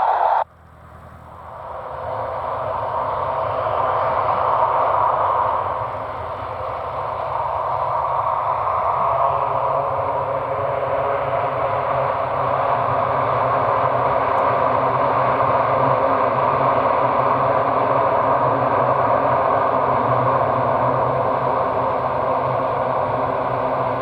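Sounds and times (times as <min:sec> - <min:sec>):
turboprop engines droning: 0:00.0 - 0:24.0.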